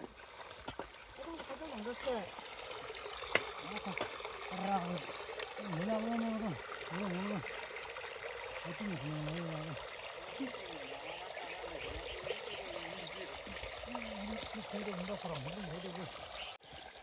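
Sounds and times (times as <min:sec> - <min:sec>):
trickling water: 0:00.0 - 0:17.0
low voices talking: 0:08.6 - 0:16.1.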